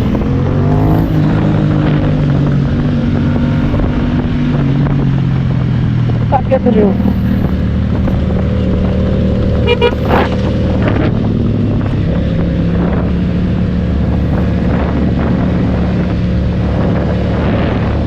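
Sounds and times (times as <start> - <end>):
motorcycle engine running: 0.0 - 18.0
vehicle horn toot: 9.6 - 10.3.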